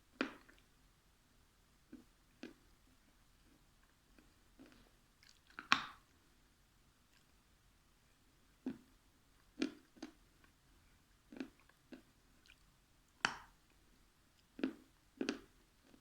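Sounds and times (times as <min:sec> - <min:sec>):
wet mouth eating sounds: 0:04.2 - 0:05.7.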